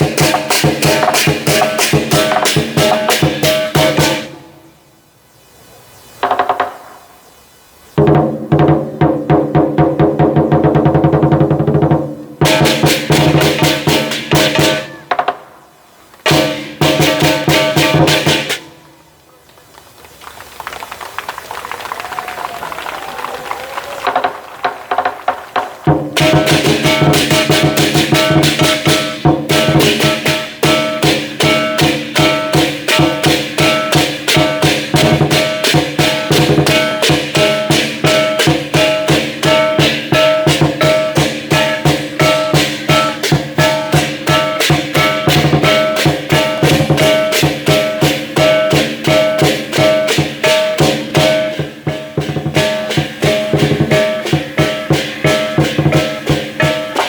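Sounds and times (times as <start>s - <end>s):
big drum beating fast: 0.0s - 4.3s, 8.0s - 14.9s, 16.3s - 18.6s, 24.1s - 57.0s
cymbals clashing: 0.0s - 4.6s, 12.4s - 15.4s, 16.3s - 18.8s, 25.9s - 57.0s.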